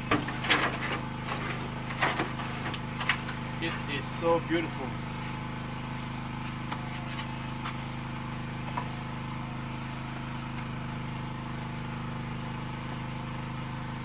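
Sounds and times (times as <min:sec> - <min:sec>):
engine droning: 0:00.0 - 0:14.0.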